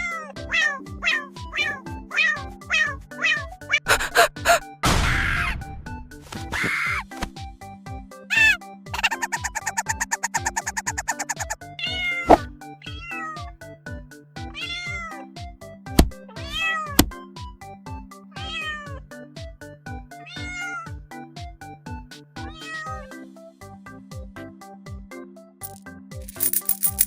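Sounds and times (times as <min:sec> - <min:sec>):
cat meowing: 0:00.0 - 0:03.8, 0:08.3 - 0:13.5, 0:14.5 - 0:15.2, 0:16.3 - 0:17.0, 0:18.4 - 0:19.0, 0:20.2 - 0:21.0, 0:22.4 - 0:23.2
background music with steady beat: 0:00.0 - 0:27.0
rapid ticking: 0:09.0 - 0:11.6.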